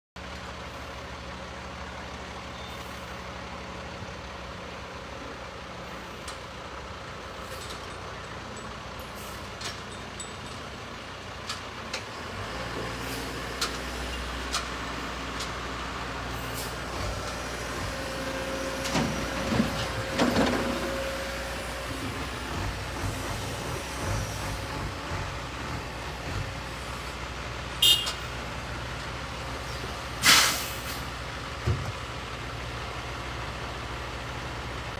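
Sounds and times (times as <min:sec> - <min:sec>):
excavator engine running: 0:10.1 - 0:34.9
metal clanks and knocks: 0:18.8 - 0:21.1.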